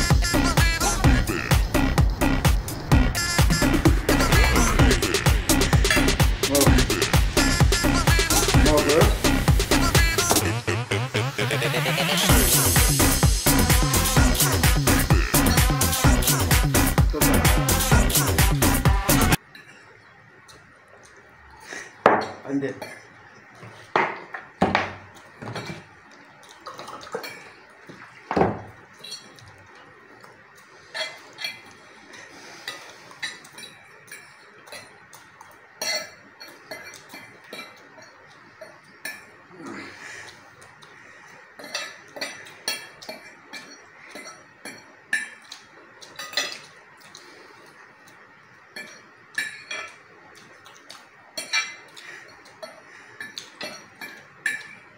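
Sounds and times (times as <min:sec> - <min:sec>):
utensils clinking on plates: 0:21.9 - 0:23.1, 0:24.0 - 0:29.8, 0:30.8 - 0:39.4, 0:41.5 - 0:47.2, 0:48.7 - 0:54.9.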